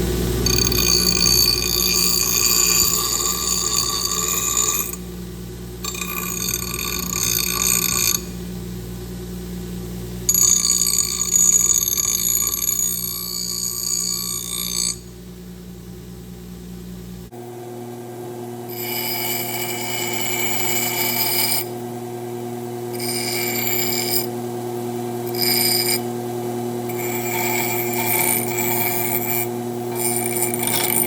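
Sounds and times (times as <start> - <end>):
electric grinder grinding steel: 0.4 - 5.0, 5.8 - 8.4, 10.3 - 15.0, 18.7 - 21.8, 22.9 - 31.0.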